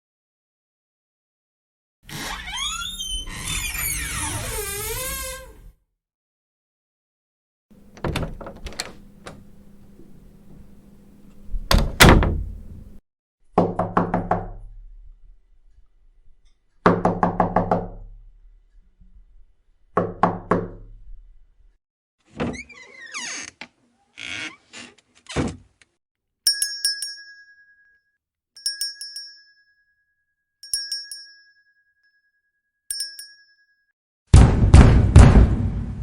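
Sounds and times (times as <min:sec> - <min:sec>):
door latch clicking: 0:07.8 - 0:13.0
door slamming: 0:07.8 - 0:13.0
knocking on a door: 0:11.6 - 0:13.0.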